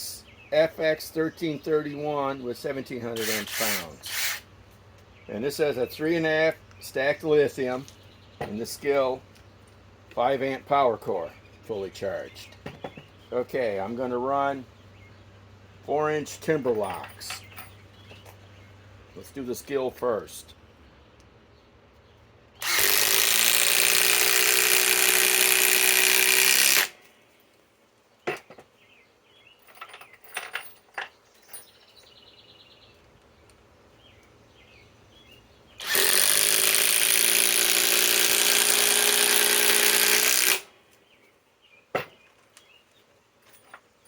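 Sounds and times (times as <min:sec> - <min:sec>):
impact driver hammering screws: 0:03.2 - 0:04.4, 0:22.6 - 0:27.0, 0:35.8 - 0:40.7
handling clicks and knocks: 0:12.4 - 0:13.2, 0:16.6 - 0:18.4, 0:29.6 - 0:32.2.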